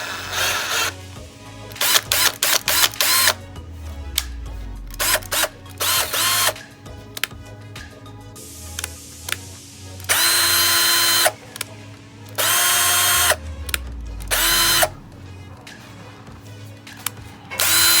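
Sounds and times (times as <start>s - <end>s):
cordless drill motor whine: 0.0s - 1.2s, 1.8s - 3.4s, 4.9s - 6.6s, 10.1s - 11.4s, 12.4s - 15.0s, 17.6s - 18.0s
small clicks: 1.7s - 3.4s, 8.8s - 11.7s.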